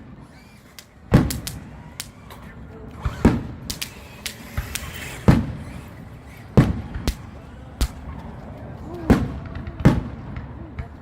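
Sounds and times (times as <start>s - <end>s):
fireworks pops and crackles: 0.0s - 2.2s, 3.1s - 5.7s, 6.5s - 11.0s
fireworks bangs and booms: 1.1s - 1.6s, 4.6s - 5.6s, 6.6s - 7.2s, 9.0s - 11.0s.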